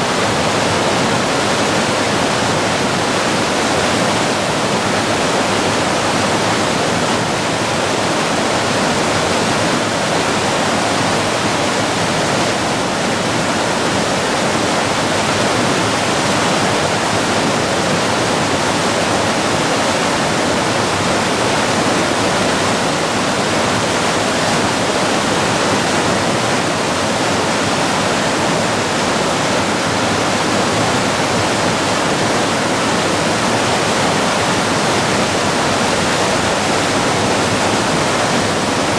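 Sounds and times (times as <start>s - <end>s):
river rushing in flood: 0.0s - 38.9s.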